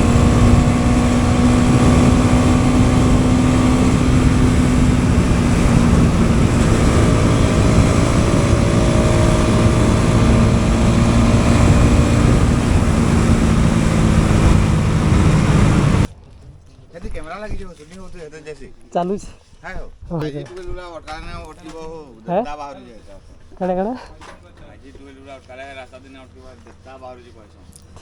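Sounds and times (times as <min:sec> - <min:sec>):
motorcycle engine running: 0:00.0 - 0:16.1
wind rushing over microphone: 0:00.0 - 0:16.1.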